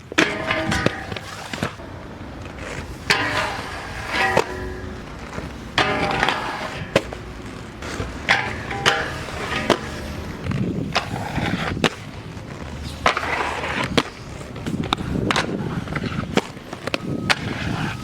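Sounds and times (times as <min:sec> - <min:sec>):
skateboard rolling and grinding: 0:00.0 - 0:18.0
skateboard trucks scraping: 0:00.0 - 0:18.0
skateboard clacks popping and landing: 0:12.9 - 0:17.5.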